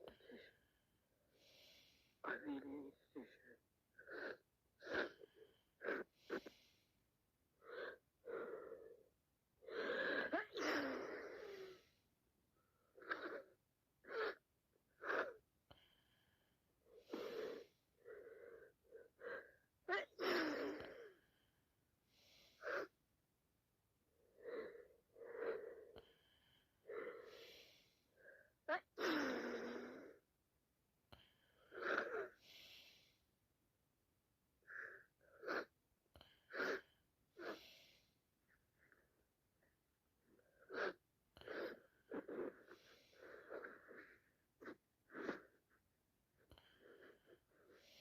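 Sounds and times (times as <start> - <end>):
woman sniffing: 37.4 - 38.0.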